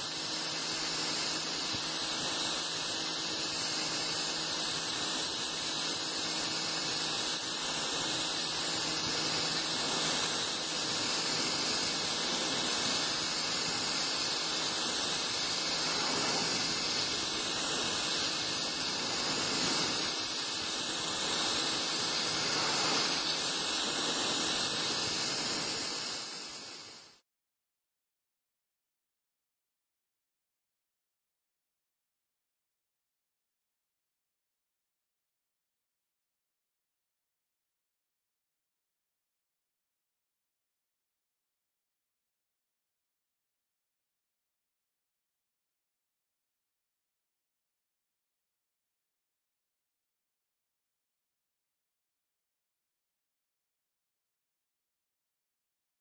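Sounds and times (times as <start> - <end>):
pressure washer spraying concrete: 0.0 - 27.2.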